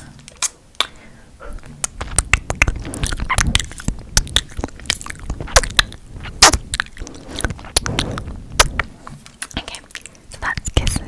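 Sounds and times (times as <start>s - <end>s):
kissing lip smacks: 0.3s - 1.0s.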